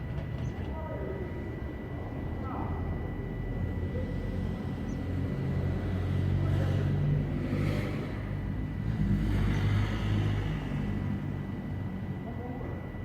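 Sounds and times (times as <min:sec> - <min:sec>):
motor vehicle rumble: 0:03.6 - 0:13.0.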